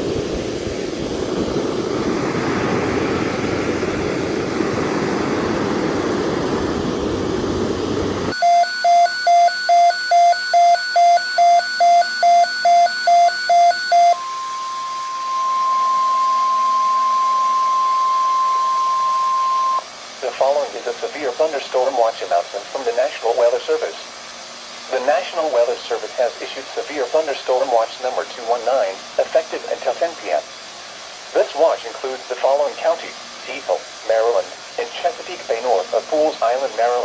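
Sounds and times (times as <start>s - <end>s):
radio static hiss: 0.0s - 8.3s, 10.1s - 37.0s
steady high alarm tone: 8.3s - 19.9s
weather radio alarm beeping: 8.3s - 19.9s.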